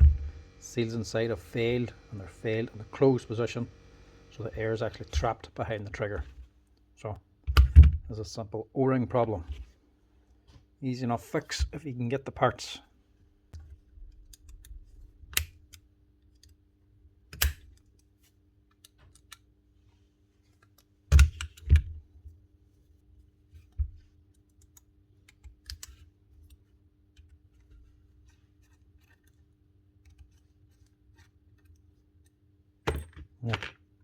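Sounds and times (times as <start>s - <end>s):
faint steady hum: 0.0s - 34.0s.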